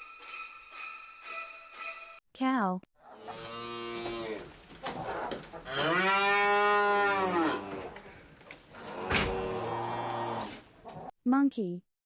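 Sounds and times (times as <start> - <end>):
cow mooing: 3.1 - 4.4, 5.7 - 7.9, 8.8 - 10.5.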